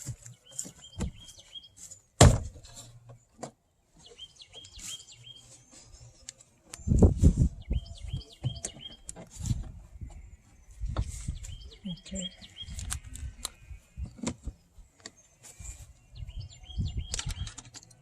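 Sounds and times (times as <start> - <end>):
small bird chirping: 0.2 - 1.8, 4.0 - 18.0
plastic car panel parts rattling: 17.1 - 18.0.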